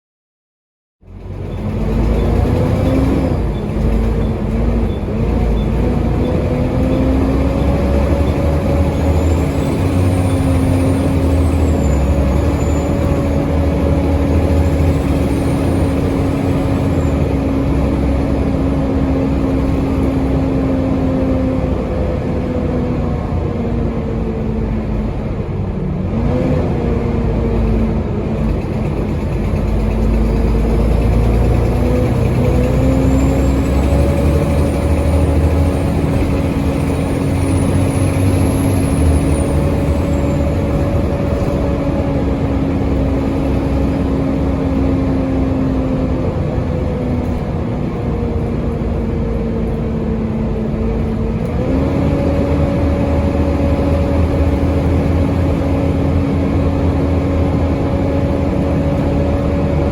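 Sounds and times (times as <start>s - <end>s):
bus engine droning: 1.0s - 59.9s
turbocharger whistle: 5.6s - 17.9s, 32.4s - 41.8s.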